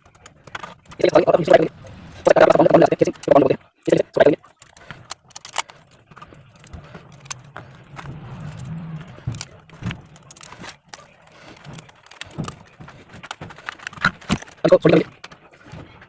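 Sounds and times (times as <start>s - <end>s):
low hum: 0.0s - 3.7s, 4.6s - 12.9s.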